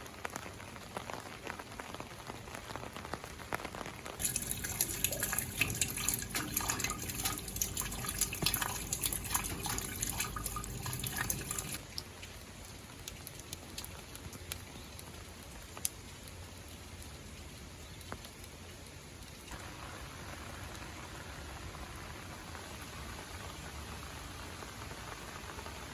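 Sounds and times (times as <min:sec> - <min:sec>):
rain falling: 0:00.0 - 0:25.9
single drips: 0:04.2 - 0:11.8.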